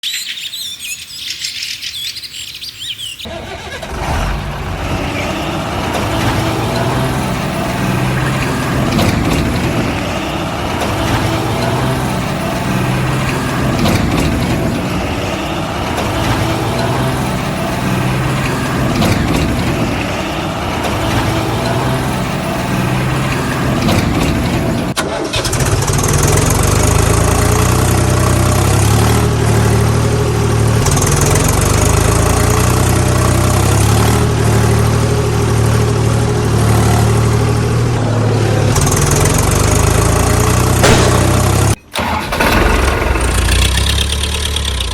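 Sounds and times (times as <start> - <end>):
birds chirping: 0.0 - 3.4
engine idling: 3.3 - 44.9
engine running: 3.3 - 44.9.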